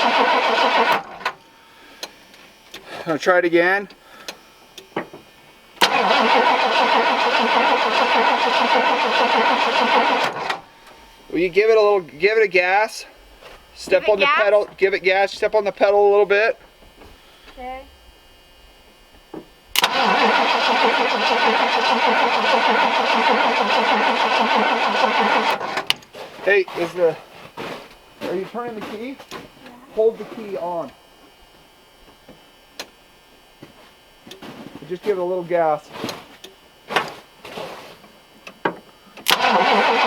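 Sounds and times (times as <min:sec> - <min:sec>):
truck starter cranking engine: 0:00.0 - 0:01.4, 0:05.8 - 0:12.8, 0:19.7 - 0:26.0, 0:39.2 - 0:40.0.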